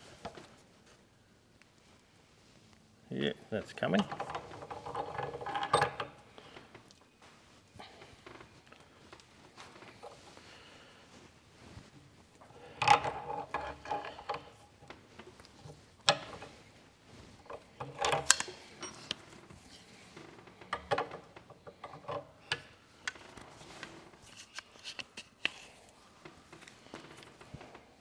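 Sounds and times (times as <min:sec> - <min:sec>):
metal tools clinking and knocking: 0:04.0 - 0:06.1, 0:17.5 - 0:19.3.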